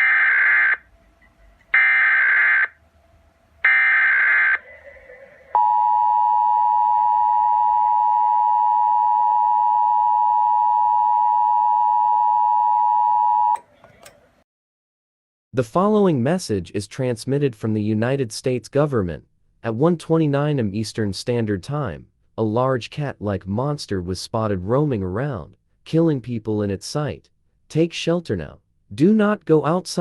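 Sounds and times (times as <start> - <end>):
loud steady alert tone: 0.0 - 0.8, 1.7 - 2.8, 3.6 - 10.2.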